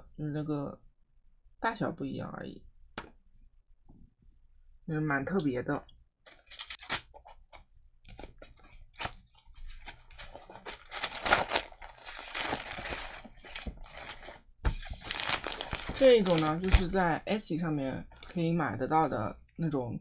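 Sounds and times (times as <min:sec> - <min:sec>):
paper rustling and crinkling: 0:06.3 - 0:17.0.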